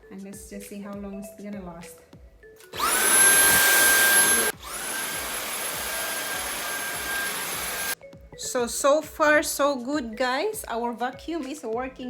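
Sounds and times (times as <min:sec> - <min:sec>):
vacuum cleaner motor whine: 0:02.8 - 0:08.0.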